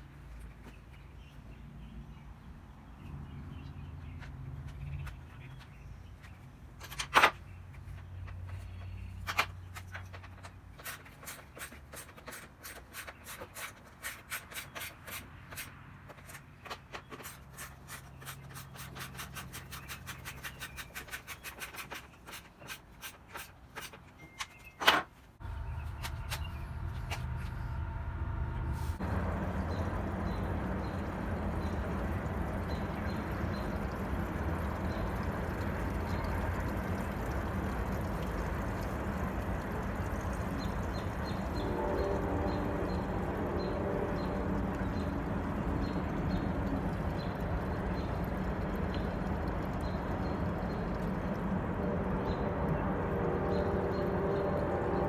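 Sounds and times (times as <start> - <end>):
steady low hum: 25.4 - 55.0
steady rushing noise: 25.4 - 55.0.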